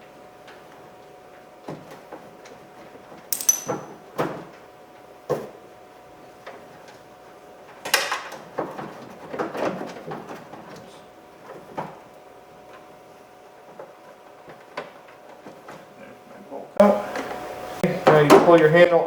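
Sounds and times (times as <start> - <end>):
metal knocks and clinks: 3.4 - 4.0
ringing metal clink: 3.4 - 4.0.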